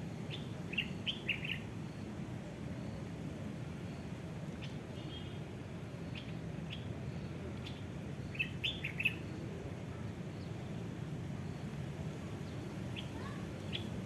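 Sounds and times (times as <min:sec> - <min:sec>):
low background noise: 0:00.0 - 0:14.0
small birds chirping: 0:12.5 - 0:14.0.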